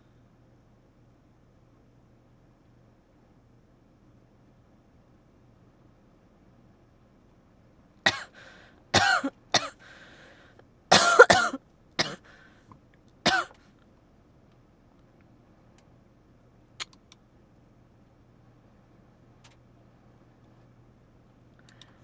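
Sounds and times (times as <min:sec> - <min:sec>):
person coughing: 0:08.1 - 0:09.9, 0:10.9 - 0:12.3, 0:13.3 - 0:13.6.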